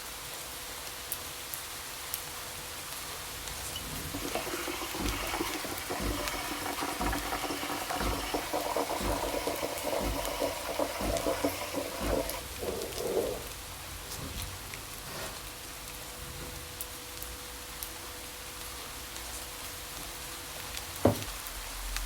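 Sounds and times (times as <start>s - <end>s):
steady rain: 0.0s - 22.0s
liquid sound with low pulse: 3.7s - 15.4s.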